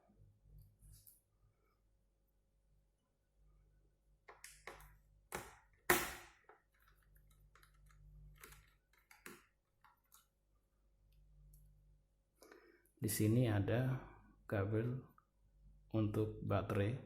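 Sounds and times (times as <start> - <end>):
laptop parts clicking and tapping: 4.2 - 10.3.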